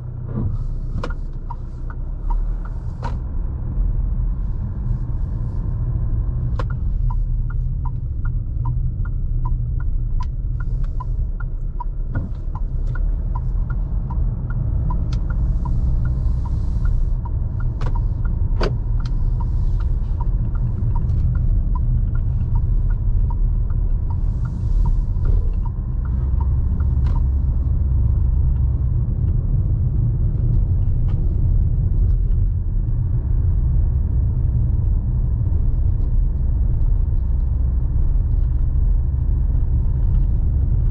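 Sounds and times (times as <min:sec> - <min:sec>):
engine and road rumble: 0:00.0 - 0:40.9
even ticking: 0:06.0 - 0:29.5.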